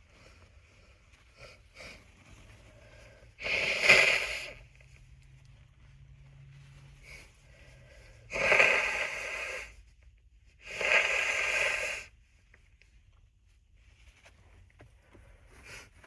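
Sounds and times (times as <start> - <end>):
person blowing nose: 3.4 - 4.7, 8.3 - 9.8, 10.6 - 12.1.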